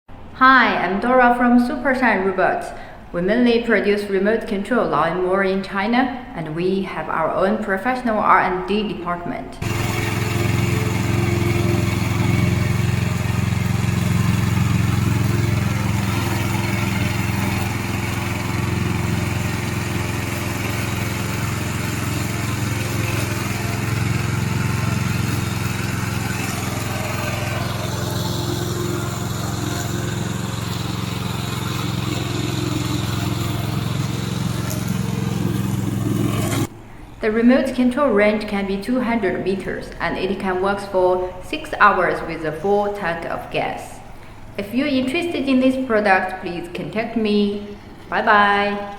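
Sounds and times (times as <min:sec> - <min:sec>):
lawn mower engine running: 0:09.6 - 0:36.8.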